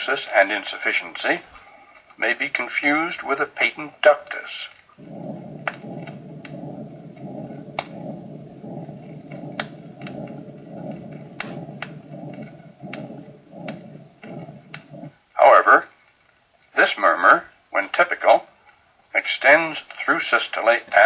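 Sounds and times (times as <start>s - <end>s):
heart sound clicks: 5.0s - 15.1s
rough heart murmur: 5.0s - 15.2s.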